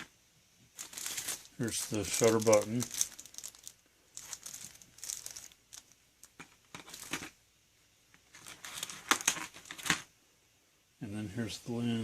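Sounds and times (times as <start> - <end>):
plastic packaging crinkling: 0.7 - 7.4, 8.3 - 10.0.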